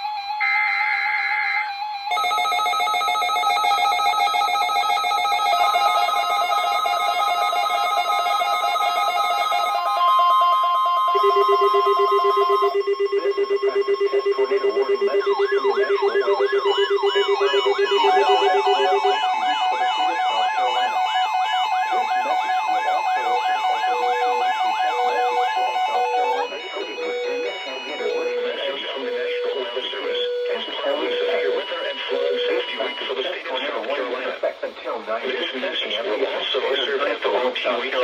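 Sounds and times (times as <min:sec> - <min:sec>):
steady warning alarm tone: 0:00.0 - 0:33.8
overlapping steady electronic tones: 0:00.0 - 0:38.0
digital data tone bursts: 0:04.7 - 0:33.8
pulsing tone: 0:09.7 - 0:33.1
rising siren-like sweeps: 0:10.0 - 0:31.5.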